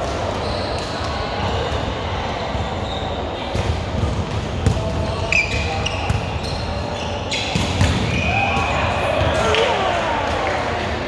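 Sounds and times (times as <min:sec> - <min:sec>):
murmur of voices in hall: 0:00.0 - 0:11.0
shoe squeak: 0:00.4 - 0:00.8, 0:05.1 - 0:07.7.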